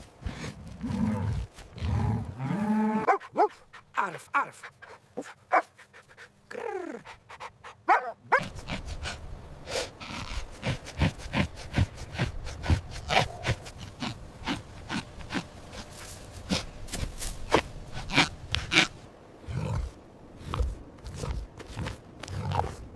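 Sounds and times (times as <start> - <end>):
dog panting or snuffling: 7.0 - 17.1
dog barking: 7.9 - 8.5.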